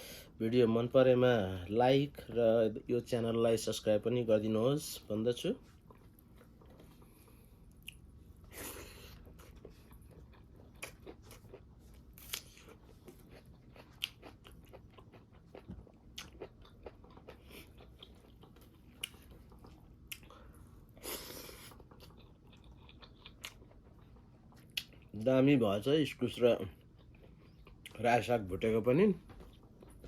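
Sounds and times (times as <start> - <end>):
chewing crunchy bones: 5.8 - 20.6, 21.3 - 25.2, 26.1 - 28.0.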